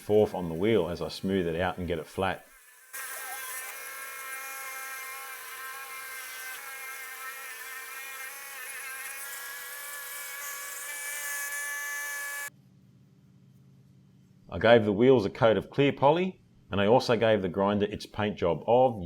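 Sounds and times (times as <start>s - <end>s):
belt grinder whining: 2.5s - 12.5s.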